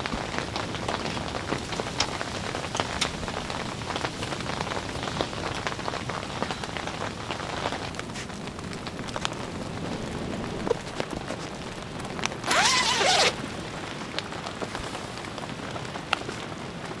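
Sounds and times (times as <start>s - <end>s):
rain pattering: 0.0s - 12.5s, 13.4s - 17.0s.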